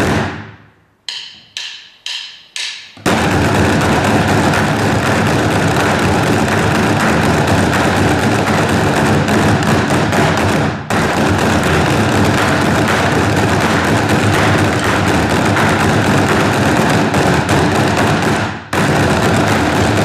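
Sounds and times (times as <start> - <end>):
wood block: 1.0 - 17.8
drum roll on many drums: 3.0 - 20.0.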